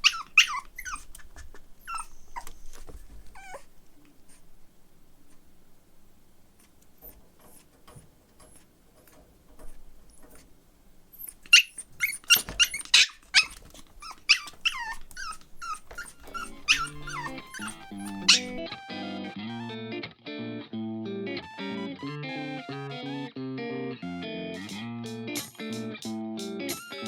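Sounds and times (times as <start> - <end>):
puppy yipping and whining: 0.0 - 3.7, 11.1 - 18.7
music: 16.4 - 27.0.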